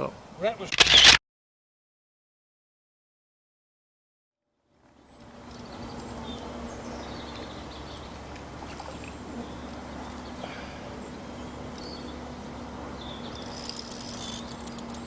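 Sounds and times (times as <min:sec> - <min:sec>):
steady low hum: 0:04.8 - 0:15.0
small birds chirping: 0:04.9 - 0:15.0.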